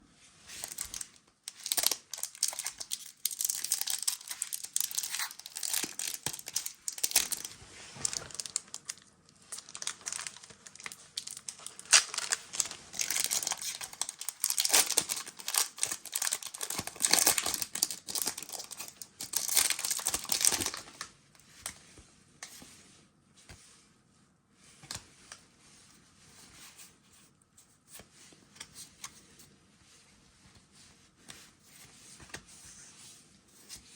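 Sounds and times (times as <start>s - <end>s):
cards clicking and rustling: 0.6s - 8.9s
foil wrapper crinkling and tearing: 0.6s - 21.0s.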